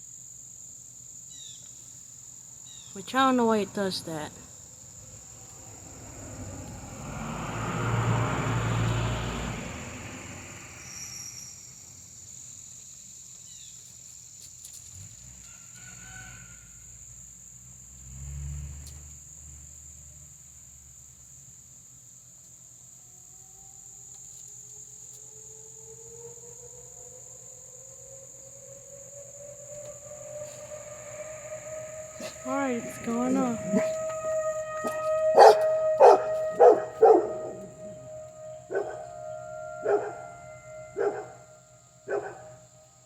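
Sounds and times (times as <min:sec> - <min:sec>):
high-pitched insect drone: 0:02.6 - 0:13.7, 0:23.6 - 0:43.0
warning siren winding up: 0:25.2 - 0:43.0.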